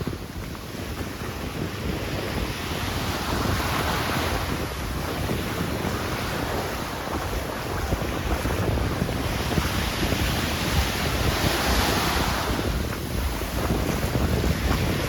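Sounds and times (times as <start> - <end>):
surf breaking on beach: 0.0 - 15.0
wind buffeting microphone: 0.0 - 15.0.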